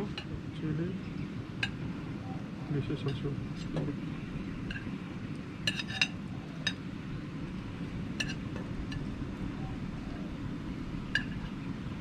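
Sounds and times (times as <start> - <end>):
low background rumble: 0.0 - 12.0
utensil clinking against cookware: 5.7 - 6.8.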